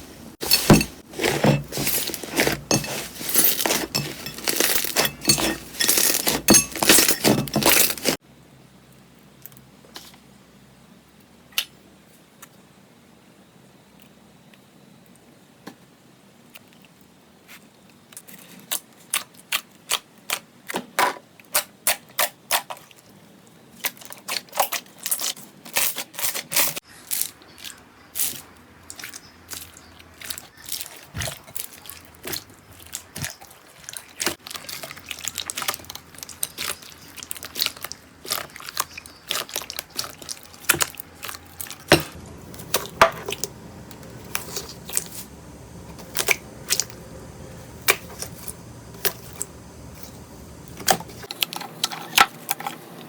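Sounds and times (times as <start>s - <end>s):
slime popping and crackling: 30.3s - 41.9s.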